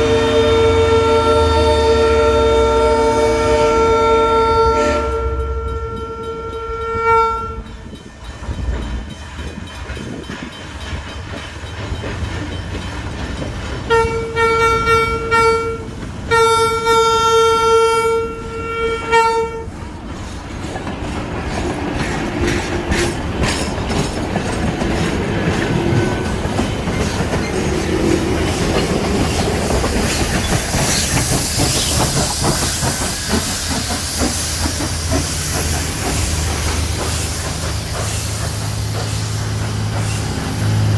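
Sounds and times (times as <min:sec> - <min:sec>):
train horn blasts: 0:00.0 - 0:07.7, 0:13.9 - 0:19.8
train rumbling on rails: 0:00.0 - 0:40.9.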